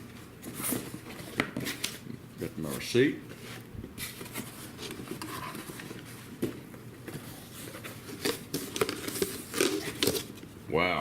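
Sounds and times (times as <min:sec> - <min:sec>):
packaging rustling: 0:03.4 - 0:10.5.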